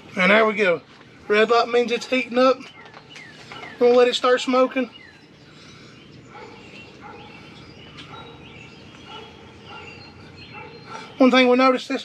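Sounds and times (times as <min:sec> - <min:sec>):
low background hum: 0:00.0 - 0:12.0
faint bird chirps: 0:02.0 - 0:11.5.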